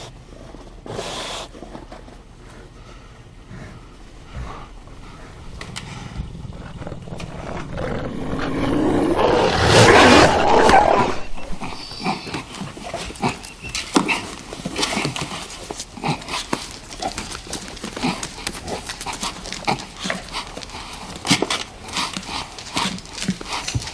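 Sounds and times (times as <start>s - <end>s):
dog snarling and growling: 4.5s - 13.4s.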